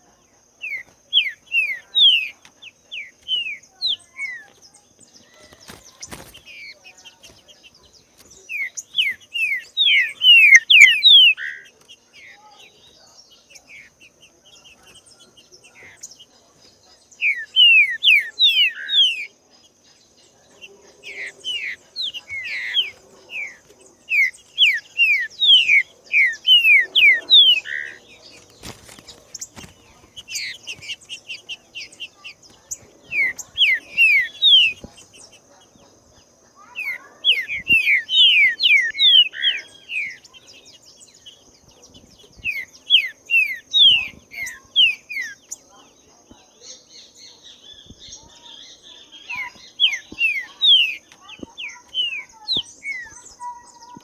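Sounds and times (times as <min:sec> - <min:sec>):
bird singing whistled phrases: 0:08.5 - 0:11.6.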